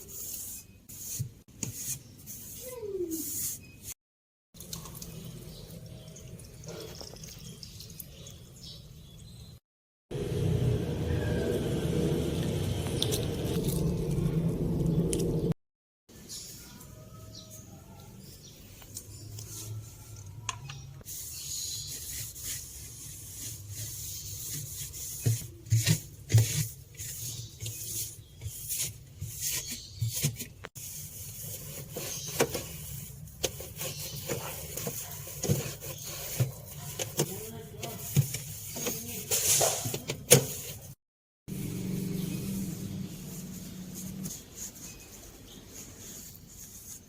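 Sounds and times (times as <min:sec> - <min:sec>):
scrubbing with a hiss: 0:00.0 - 0:03.9, 0:21.0 - 0:47.0.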